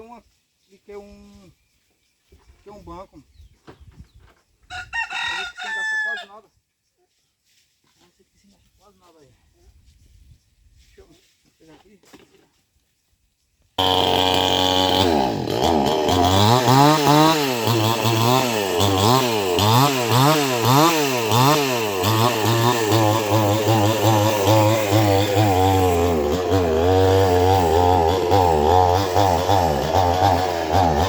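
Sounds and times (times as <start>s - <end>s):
chainsaw engine revving: 13.8s - 31.0s.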